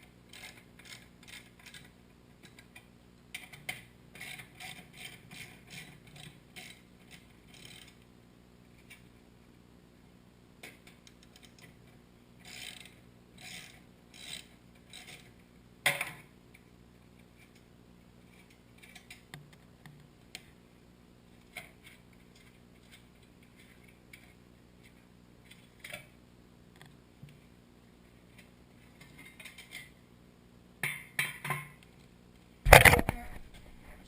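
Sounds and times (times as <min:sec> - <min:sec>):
tools and parts clicking: 0:00.3 - 0:08.0, 0:12.4 - 0:15.3
ratchet wrench clicking: 0:07.5 - 0:08.0, 0:12.4 - 0:15.2.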